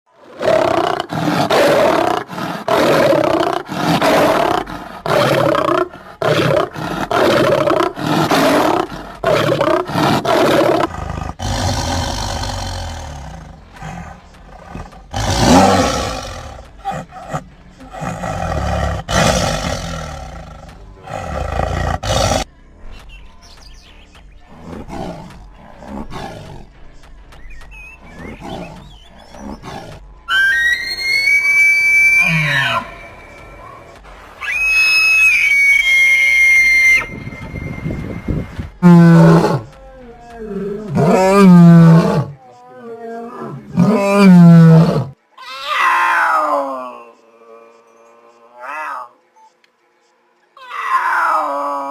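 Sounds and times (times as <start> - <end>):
deep drawn-out roars: 0.3 - 22.5
loud animal calls: 28.0 - 46.9.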